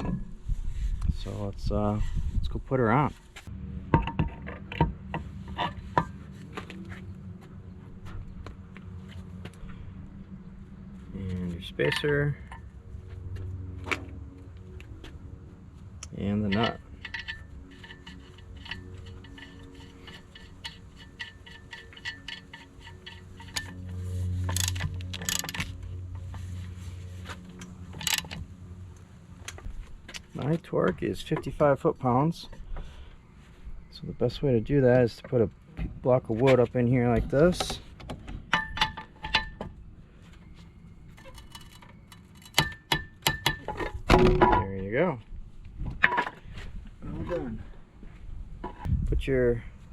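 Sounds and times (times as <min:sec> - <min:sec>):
low steady hum: 0:00.0 - 0:49.9
ratchet wrench clicking: 0:24.5 - 0:25.6, 0:28.0 - 0:28.4.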